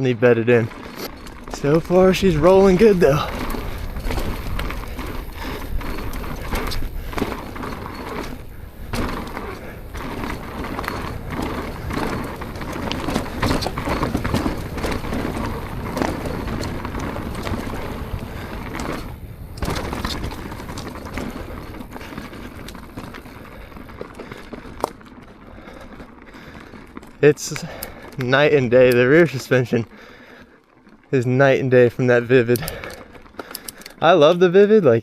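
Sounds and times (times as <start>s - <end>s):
bike chain and frame rattling: 0.0s - 35.0s
tyres rolling over rough ground: 0.0s - 35.0s.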